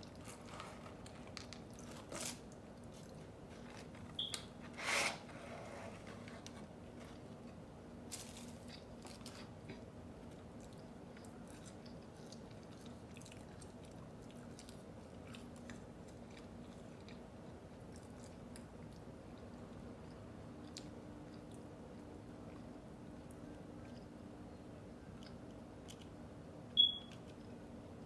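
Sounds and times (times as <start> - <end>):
person chewing food: 8.6 - 21.6, 22.4 - 24.2.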